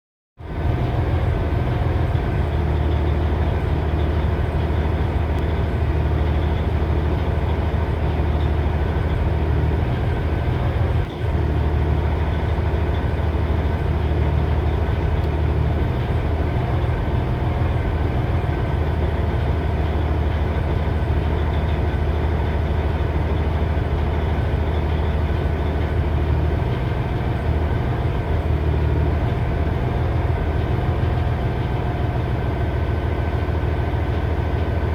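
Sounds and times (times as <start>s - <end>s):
diesel engine idling roughly: 0.4s - 34.9s.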